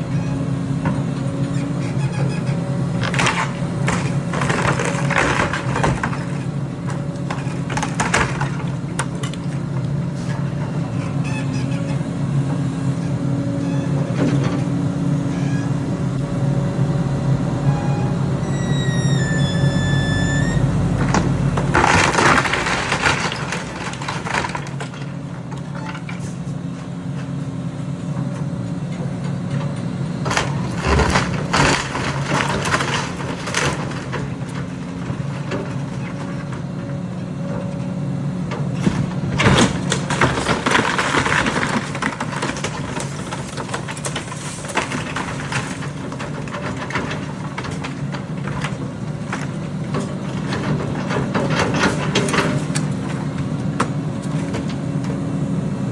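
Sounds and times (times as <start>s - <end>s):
heavy construction machinery engine: 0.0s - 55.9s
high squeal: 17.6s - 20.9s.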